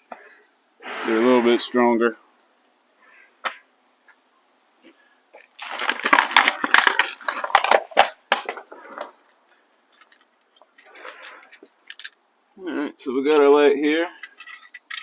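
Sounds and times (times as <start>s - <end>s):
rustling and clattering of parts: 4.8s - 12.2s, 13.3s - 15.0s.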